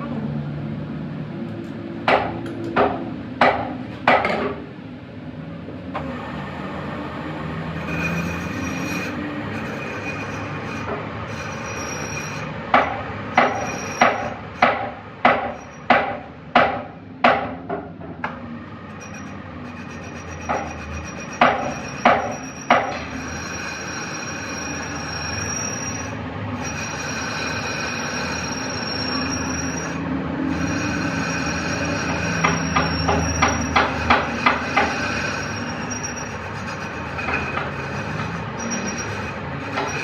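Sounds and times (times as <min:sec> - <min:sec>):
sharp hand tool strokes on steel: 0:19.0 - 0:40.0.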